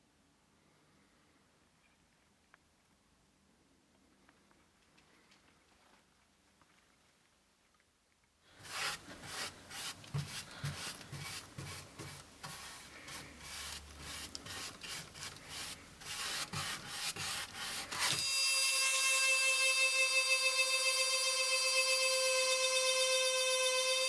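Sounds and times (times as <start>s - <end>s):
engraving machine rasping: 8.6s - 24.0s
music with sustained tones: 18.2s - 24.0s.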